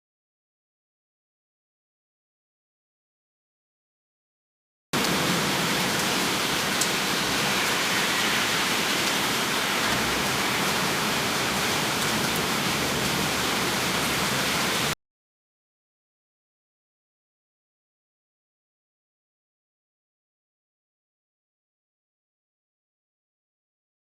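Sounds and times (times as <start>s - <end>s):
heavy rain: 5.0s - 15.0s.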